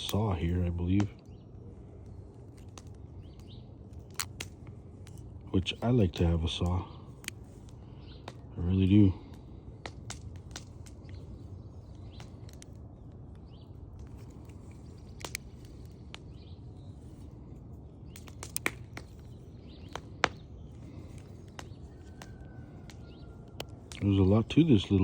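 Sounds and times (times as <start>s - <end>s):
faint bird chirps: 19.2s - 25.0s.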